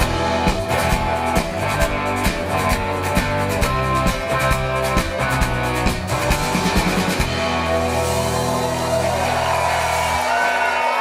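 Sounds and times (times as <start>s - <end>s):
live rock band playing: 0.0s - 11.0s
crowd cheering: 6.5s - 11.0s.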